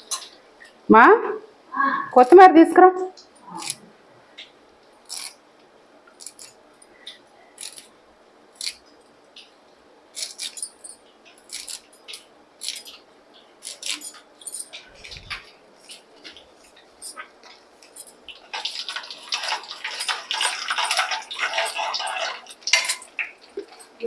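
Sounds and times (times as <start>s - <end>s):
spices crackling in hot oil: 8.6s - 24.0s.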